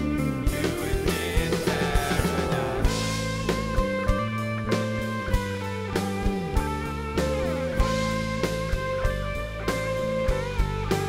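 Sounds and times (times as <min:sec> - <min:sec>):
guitar and keyboard notes: 0:00.0 - 0:11.0
steady drum beat: 0:00.0 - 0:11.0.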